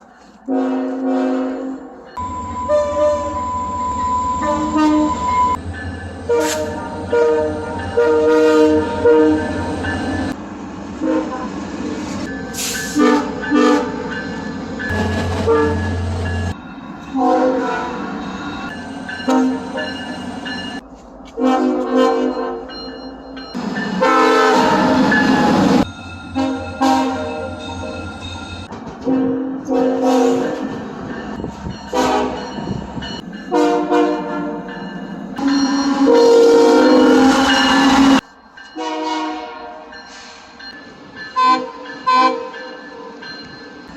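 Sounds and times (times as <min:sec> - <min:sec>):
low train rumble: 0:00.0 - 0:43.9
train air horn blasts: 0:00.4 - 0:05.6, 0:06.3 - 0:09.8, 0:11.0 - 0:11.6, 0:12.6 - 0:14.0, 0:14.9 - 0:16.2, 0:17.1 - 0:18.0, 0:19.3 - 0:19.7, 0:21.4 - 0:22.6, 0:24.0 - 0:25.5, 0:26.4 - 0:28.0, 0:29.0 - 0:30.7, 0:31.9 - 0:32.5, 0:33.5 - 0:34.6, 0:35.4 - 0:38.2, 0:38.8 - 0:40.5.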